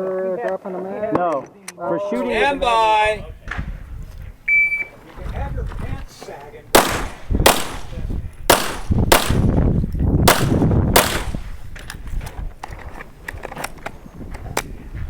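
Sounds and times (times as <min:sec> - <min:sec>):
loud pistol shots: 0:06.7 - 0:09.6, 0:10.2 - 0:11.6.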